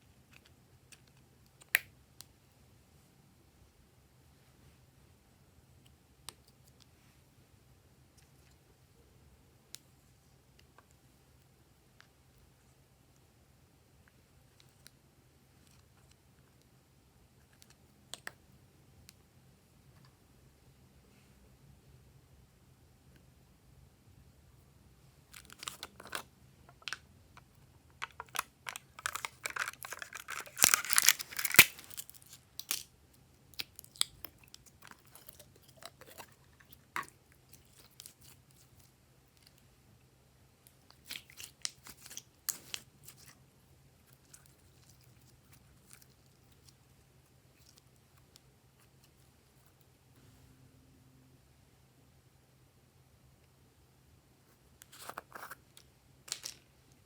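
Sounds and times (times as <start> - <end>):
slime crackling and popping: 28.0 - 32.9.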